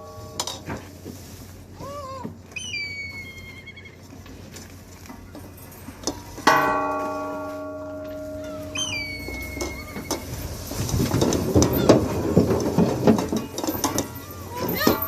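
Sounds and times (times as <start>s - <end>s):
ringing metallic strike: 0.0s - 1.0s, 5.2s - 10.9s
short pitched squeals: 2.5s - 4.0s, 8.2s - 10.6s.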